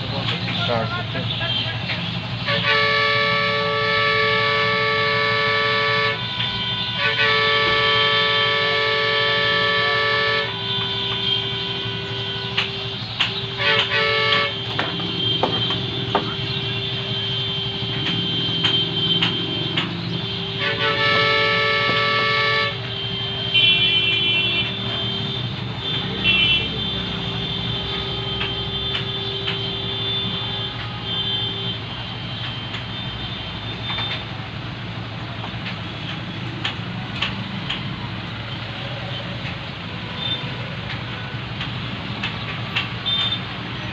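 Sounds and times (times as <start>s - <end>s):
low hum of traffic: 0.0s - 43.9s
vehicle horn honks: 2.4s - 34.1s.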